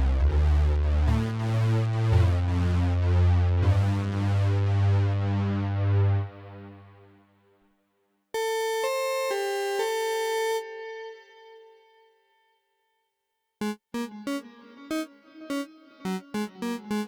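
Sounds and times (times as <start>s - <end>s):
bright synthesizer held notes: 13.6s - 17.0s
synthesizer bass pulsing patch: 13.6s - 17.0s.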